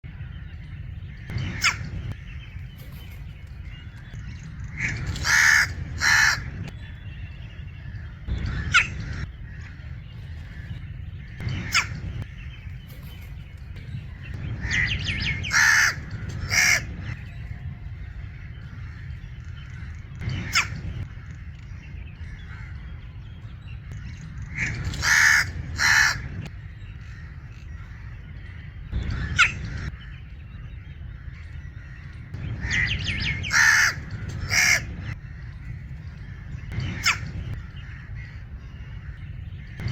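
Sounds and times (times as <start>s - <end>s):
low rumble: 0.0s - 39.9s
crow cawing: 4.6s - 6.7s, 7.8s - 12.4s, 14.4s - 17.2s, 23.9s - 26.4s, 27.0s - 30.2s, 31.1s - 39.9s.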